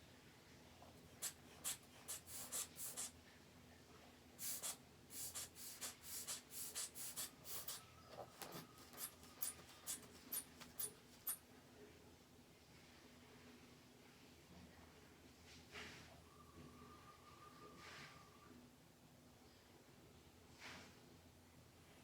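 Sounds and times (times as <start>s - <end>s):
inflation bulb squeezed in puffs: 1.0s - 3.1s, 4.4s - 11.4s.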